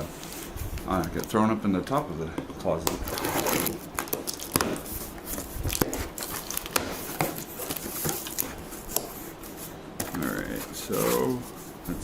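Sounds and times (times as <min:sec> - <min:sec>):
cardboard packaging rustling: 0:02.9 - 0:12.0.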